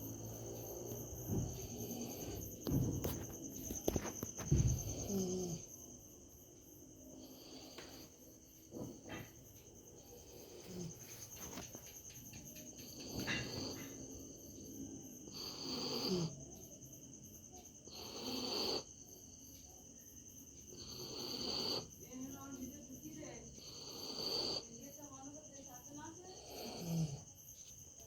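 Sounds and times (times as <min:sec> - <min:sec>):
dog snoring: 0:00.0 - 0:05.8, 0:07.1 - 0:11.7, 0:12.6 - 0:14.6, 0:15.2 - 0:16.4, 0:17.8 - 0:18.9, 0:20.7 - 0:22.0, 0:23.5 - 0:24.8, 0:26.3 - 0:27.3
insect chirping: 0:00.0 - 0:28.0.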